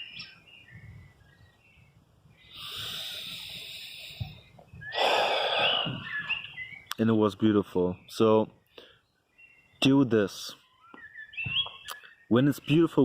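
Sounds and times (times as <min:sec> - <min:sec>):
birds chirping faintly: 0:00.0 - 0:13.0
person breathing close to microphone: 0:02.5 - 0:06.1.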